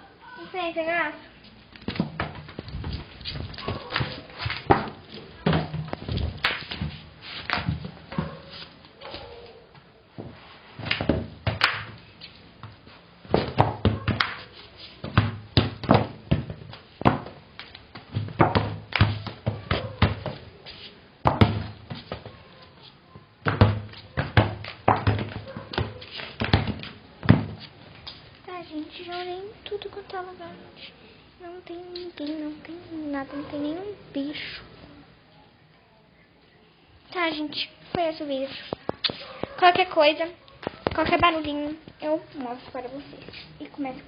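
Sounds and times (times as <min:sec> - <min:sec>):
footsteps and knocks indoors: 0:01.4 - 0:12.0, 0:12.6 - 0:20.5.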